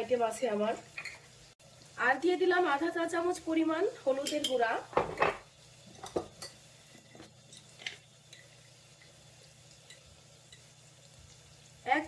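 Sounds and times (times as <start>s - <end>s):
spoon clinking against cookware: 4.2s - 4.6s.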